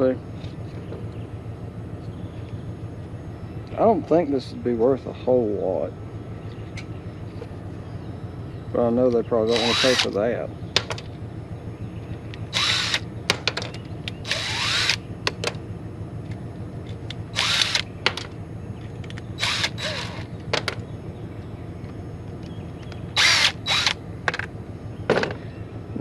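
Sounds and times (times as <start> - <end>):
steady low hum: 0.0 - 26.0
small power drill bursts: 9.5 - 10.1, 12.5 - 13.0, 14.2 - 15.0, 17.3 - 17.9, 19.4 - 20.3, 23.1 - 24.0.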